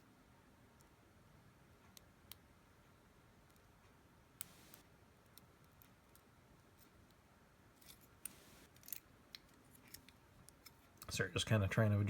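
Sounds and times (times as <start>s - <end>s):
lock pick clicking and scratching: 7.8s - 11.1s.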